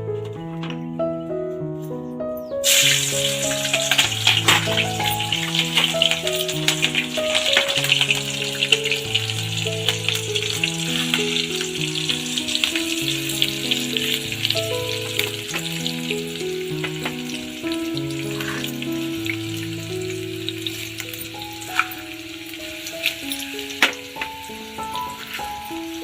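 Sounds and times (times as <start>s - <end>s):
background music of held notes: 0.0s - 26.0s
food frying in hot oil: 2.6s - 26.0s.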